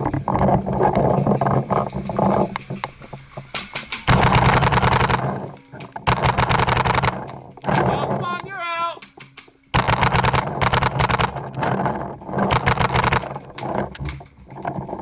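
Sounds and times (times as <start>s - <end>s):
paintball markers firing: 4.1s - 7.4s, 9.0s - 11.6s, 12.5s - 13.3s.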